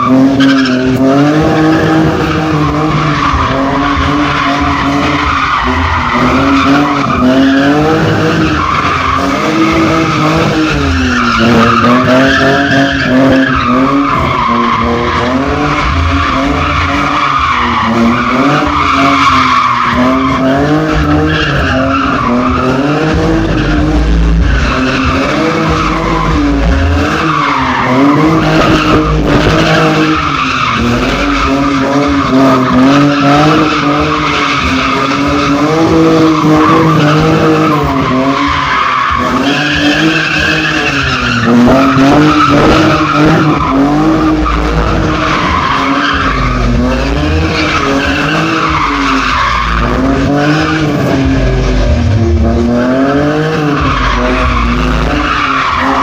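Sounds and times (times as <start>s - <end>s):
car engine revving: 0.0s - 56.0s
tyres skidding and squealing: 0.0s - 56.0s.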